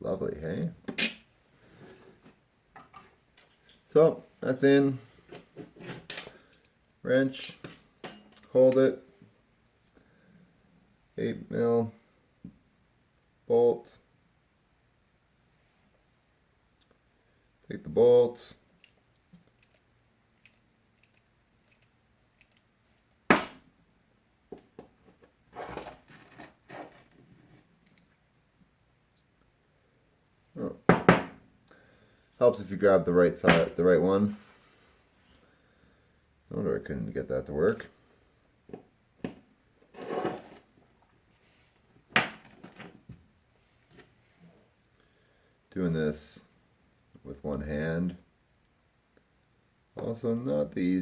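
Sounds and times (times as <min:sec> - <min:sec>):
light clicks of metal parts: 0:18.8 - 0:23.2.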